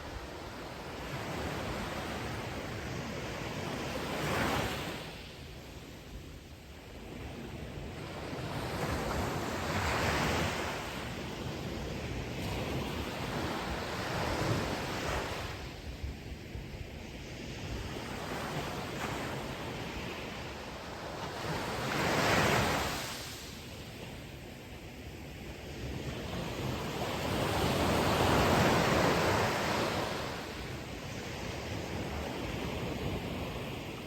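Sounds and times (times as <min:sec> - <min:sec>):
ocean waves breaking on shore: 0:17.6 - 0:24.1, 0:25.3 - 0:34.0.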